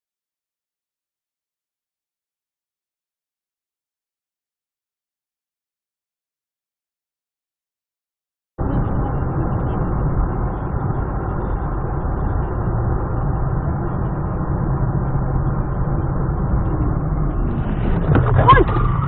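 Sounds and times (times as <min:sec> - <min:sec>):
vehicle road and engine rumble: 0:08.6 - 0:19.0.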